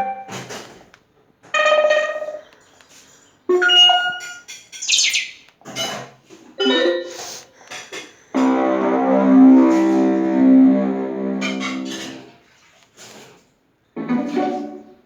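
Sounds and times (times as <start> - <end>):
notification blip: 4.8 - 5.4.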